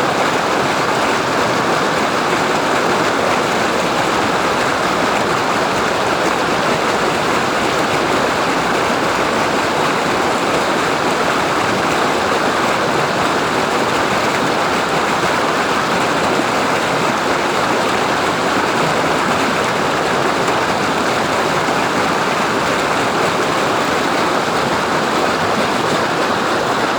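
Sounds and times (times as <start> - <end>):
waterfall roaring: 0.0 - 26.9.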